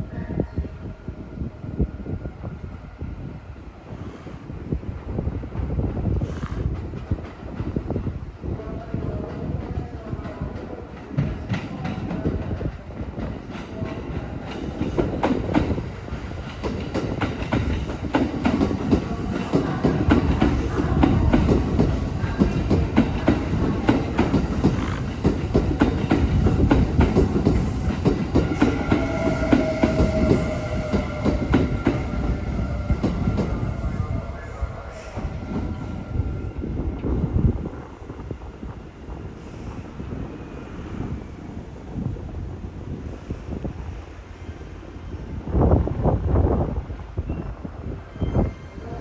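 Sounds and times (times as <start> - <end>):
heavy train rumble: 0.0 - 49.0
wind buffeting microphone: 0.0 - 49.0
train wheels clacking over rail joints: 11.0 - 33.5
high wheel squeal: 47.3 - 49.0.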